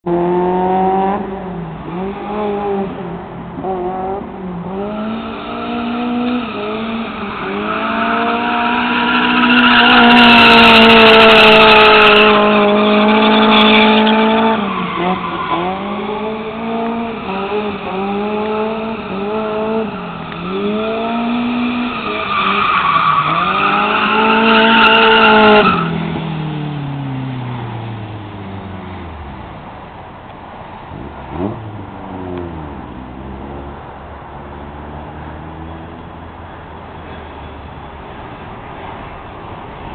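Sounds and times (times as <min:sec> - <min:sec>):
car engine revving: 0:00.0 - 0:29.3.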